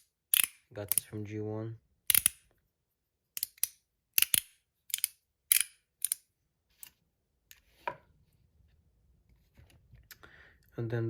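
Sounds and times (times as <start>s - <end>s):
metal slider fidget clicking: 0.3s - 1.1s, 2.1s - 2.4s, 3.4s - 6.2s.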